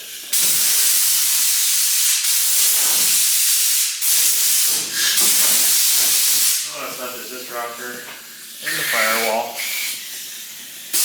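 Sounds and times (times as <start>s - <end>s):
compressed air hissing: 0.0s - 11.0s.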